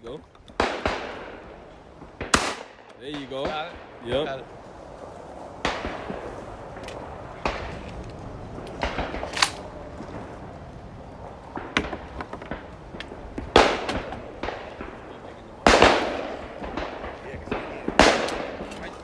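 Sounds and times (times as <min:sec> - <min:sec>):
gunshot echo: 0:00.6 - 0:01.6, 0:02.2 - 0:04.4, 0:08.8 - 0:09.7, 0:13.5 - 0:19.0
shotgun shots: 0:00.6 - 0:04.4, 0:05.6 - 0:06.3, 0:08.8 - 0:09.7, 0:13.5 - 0:19.0.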